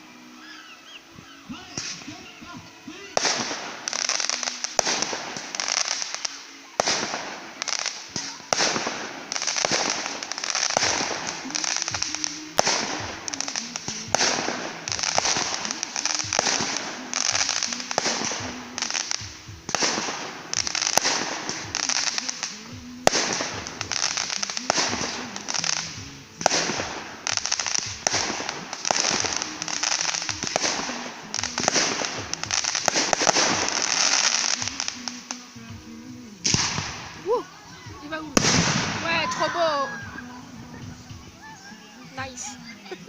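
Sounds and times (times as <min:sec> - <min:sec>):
fireworks crackling bursts: 0:00.0 - 0:43.0
fireworks sharp bangs: 0:01.2 - 0:42.6.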